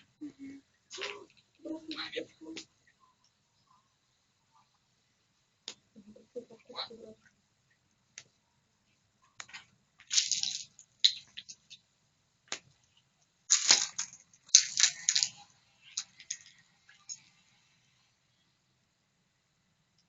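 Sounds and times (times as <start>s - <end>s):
campfire crackling and popping: 9.4s - 11.8s, 13.5s - 16.6s.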